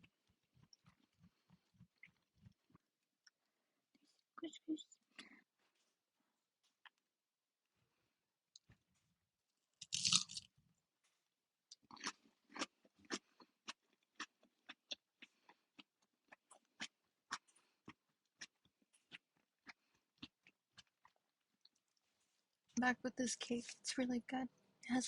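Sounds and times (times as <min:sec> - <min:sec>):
person chewing food: 0:00.0 - 0:04.2, 0:06.6 - 0:07.1, 0:08.6 - 0:09.2, 0:09.8 - 0:22.7
crunchy bite: 0:09.8 - 0:10.5.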